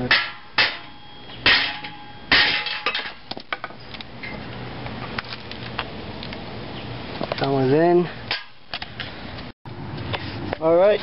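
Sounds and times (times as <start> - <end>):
hammer striking metal plate: 0.0 - 3.2.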